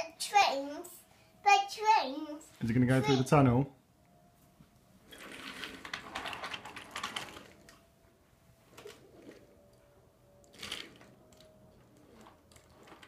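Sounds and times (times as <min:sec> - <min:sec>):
wooden toy train clattering: 0:05.1 - 0:07.8.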